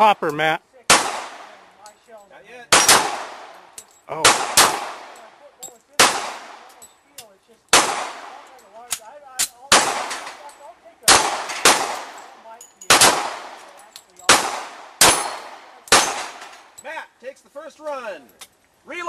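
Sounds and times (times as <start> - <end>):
loud gunshots with echo: 0.9 - 1.6, 2.7 - 3.5, 4.2 - 5.2, 6.0 - 6.7, 7.7 - 8.4, 9.7 - 10.4, 11.1 - 12.2, 12.9 - 13.6, 14.3 - 16.5.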